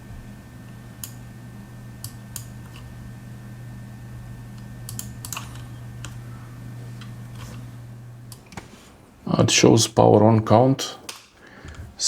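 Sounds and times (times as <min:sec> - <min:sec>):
desktop computer hum: 0:00.0 - 0:12.0
keyboard and mouse clicks: 0:04.6 - 0:06.2.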